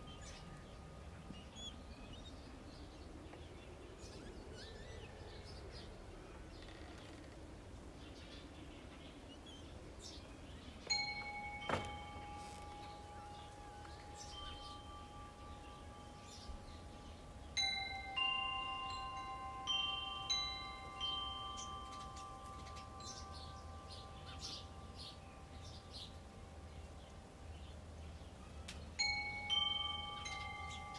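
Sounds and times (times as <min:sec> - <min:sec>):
wind chimes ringing: 0:00.0 - 0:02.4, 0:10.0 - 0:30.9
birds chirping faintly: 0:00.0 - 0:30.9.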